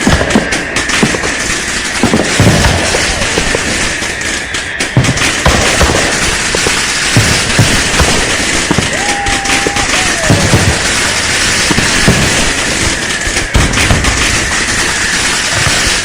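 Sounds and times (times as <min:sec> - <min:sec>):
firecrackers crackling and banging: 0:00.0 - 0:16.0.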